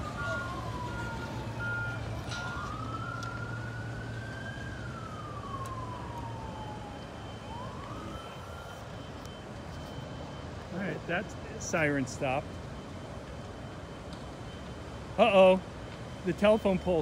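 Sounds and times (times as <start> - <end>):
emergency siren wailing: 0.0 - 17.0
short beeps: 8.2 - 14.8.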